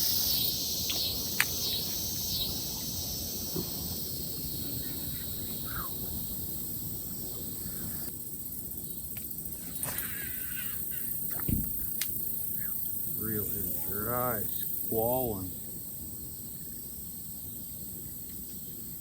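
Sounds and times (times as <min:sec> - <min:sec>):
dull thump: 0:11.3 - 0:11.9.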